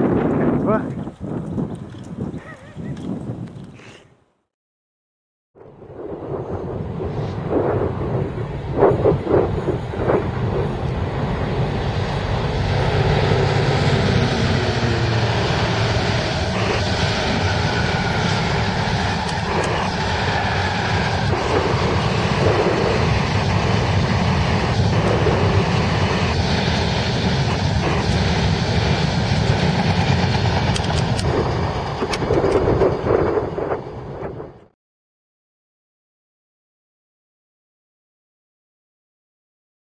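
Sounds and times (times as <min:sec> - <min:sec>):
train passing at speed: 0:06.1 - 0:34.6.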